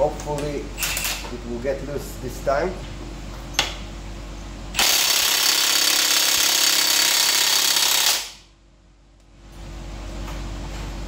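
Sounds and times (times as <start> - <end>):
impact wrench hammering: 4.8 - 8.4.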